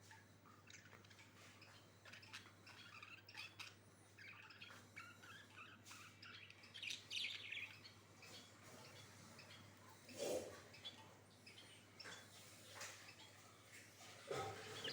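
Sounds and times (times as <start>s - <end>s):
budgerigars chirping: 0.6s - 12.3s, 14.5s - 14.9s.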